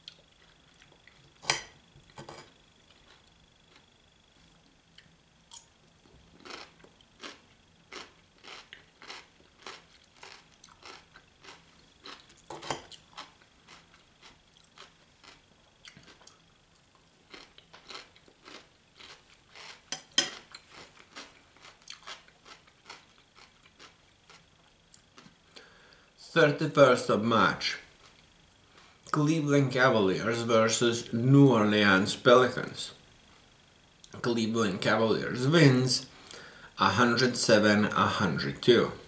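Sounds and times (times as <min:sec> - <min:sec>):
person chewing crunchy food: 0:00.0 - 0:03.9, 0:04.6 - 0:25.6.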